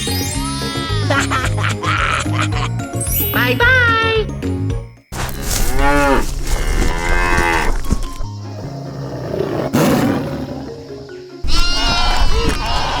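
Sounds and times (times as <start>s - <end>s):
background music: 0.0s - 13.0s
cow mooing: 5.3s - 8.0s.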